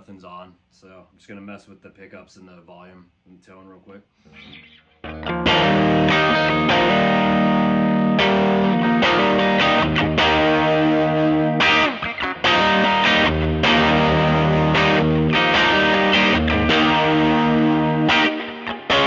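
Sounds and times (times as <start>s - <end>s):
overdriven electric guitar chords: 4.3s - 19.0s.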